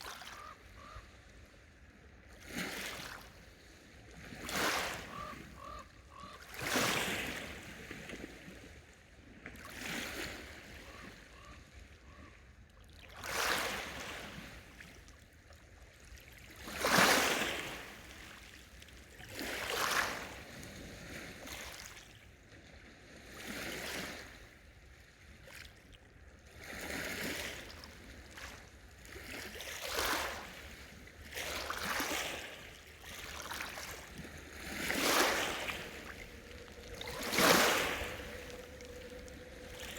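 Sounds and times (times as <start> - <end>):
small waves washing onto shore: 0.0 - 12.2, 26.5 - 39.9.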